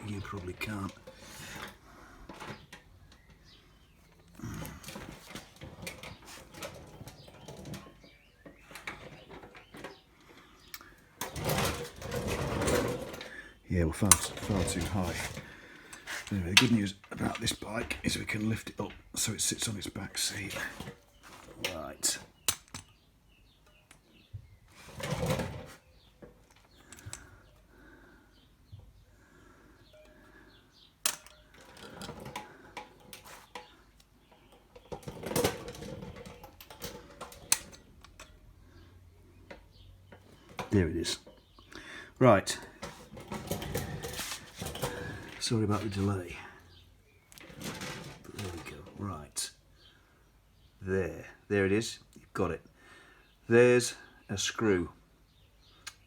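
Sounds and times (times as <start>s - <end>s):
rustling of handling: 0.0s - 13.4s, 14.0s - 23.0s, 23.6s - 28.1s, 29.3s - 38.4s, 42.6s - 49.3s.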